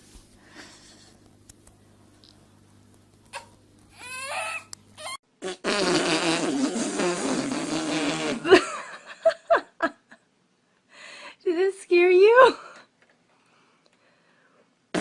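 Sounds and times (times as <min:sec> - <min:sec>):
short squeaky sounds: 0:03.4 - 0:05.2
long fart: 0:05.4 - 0:08.6.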